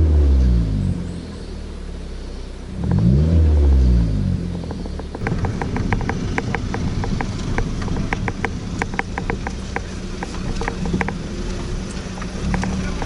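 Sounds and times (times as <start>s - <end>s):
car engine revving: 0.0s - 13.0s
rapid irregular engine ticking: 4.4s - 13.0s.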